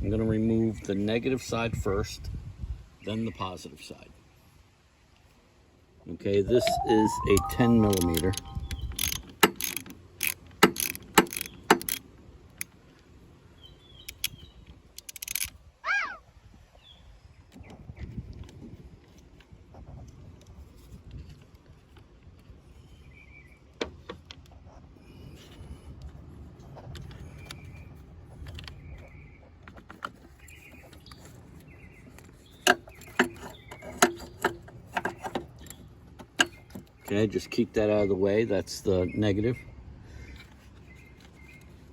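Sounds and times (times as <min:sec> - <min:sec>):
short high chirp: 0:06.5 - 0:08.9
wrench metallic clicks: 0:08.1 - 0:12.0, 0:15.0 - 0:15.5.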